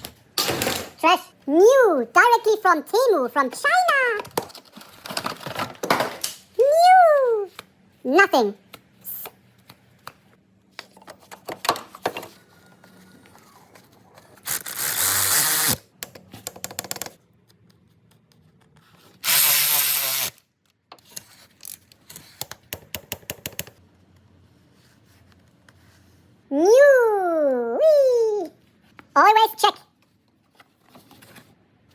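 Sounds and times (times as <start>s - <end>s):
power tool winding down: 14.5s - 15.8s, 19.2s - 20.4s.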